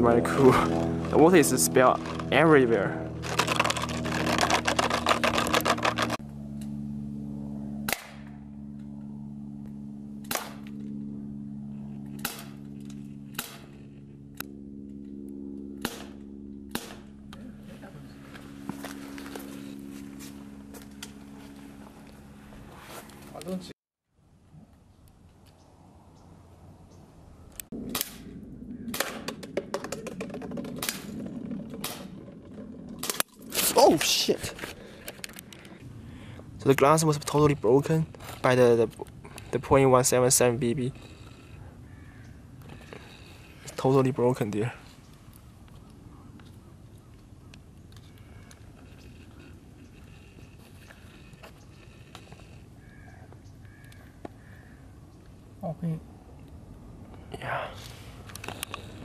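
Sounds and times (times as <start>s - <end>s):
steady low hum: 0.0s - 59.0s
air pistol shots: 10.2s - 10.6s, 12.2s - 12.6s, 15.8s - 17.0s, 27.8s - 28.3s, 28.9s - 29.3s
air pistol cracks: 27.9s - 28.3s.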